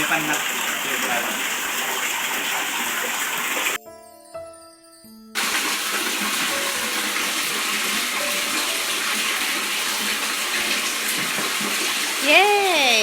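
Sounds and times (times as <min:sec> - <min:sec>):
water running: 0:00.0 - 0:03.8, 0:05.4 - 0:13.0.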